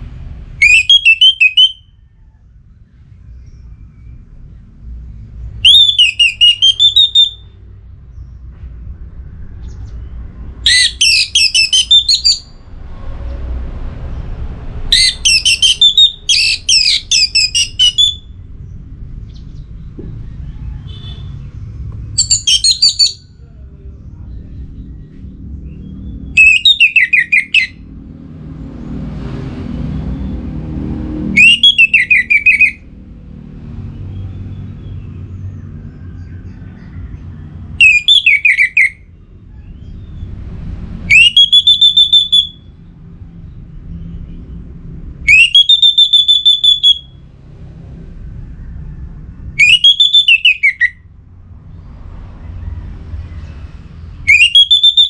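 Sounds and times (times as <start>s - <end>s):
thrush whistling song: 0.5s - 2.4s, 5.3s - 7.7s, 9.3s - 13.4s, 14.1s - 18.7s, 19.3s - 23.4s, 24.8s - 27.9s, 31.1s - 32.9s, 35.9s - 40.3s, 41.0s - 42.9s, 43.5s - 47.4s, 48.5s - 51.1s, 52.6s - 55.0s
low rumble: 12.2s - 22.6s, 23.2s - 26.5s, 27.7s - 31.6s, 39.0s - 41.2s, 42.6s - 45.3s, 47.0s - 49.6s, 51.0s - 54.3s.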